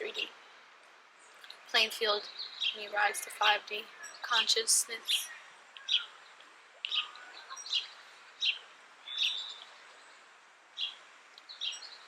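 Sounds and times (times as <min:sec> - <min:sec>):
faint steady hiss: 0:00.0 - 0:12.0
small bird chirping: 0:01.2 - 0:03.2, 0:05.0 - 0:09.8, 0:10.8 - 0:12.0.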